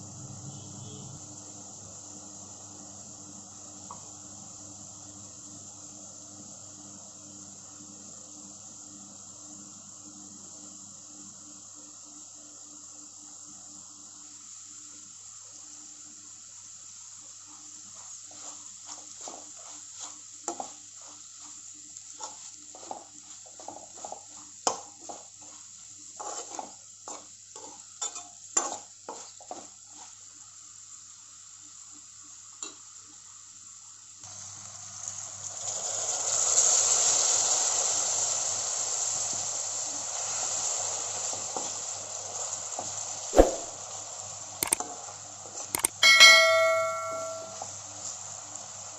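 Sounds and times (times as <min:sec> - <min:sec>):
faint hiss: 0:00.0 - 0:22.0
food sizzling in hot oil: 0:00.0 - 0:48.9
spatula scraping frying pan: 0:17.9 - 0:30.2.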